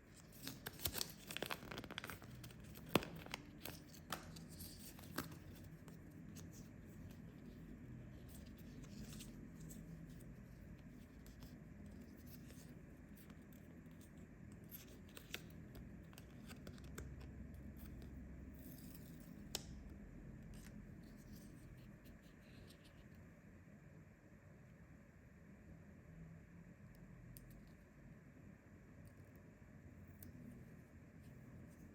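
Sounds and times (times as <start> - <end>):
hands handling plastic packaging: 0.1 - 13.3.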